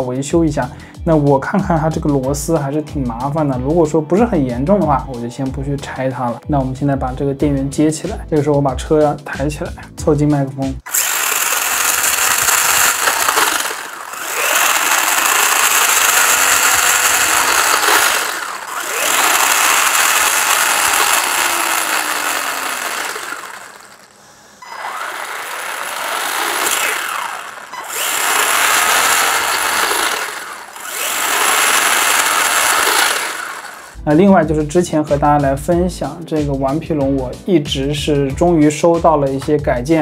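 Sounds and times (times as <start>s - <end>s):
toy car motor and gears whirring: 10.9s - 34.0s.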